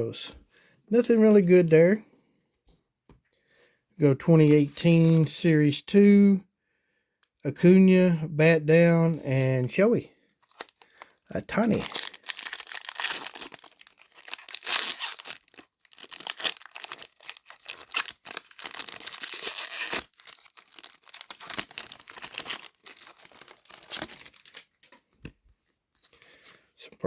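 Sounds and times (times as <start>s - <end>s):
cards rustling: 4.3s - 5.5s, 9.0s - 27.0s
plastic wrapper crinkling: 10.4s - 25.3s.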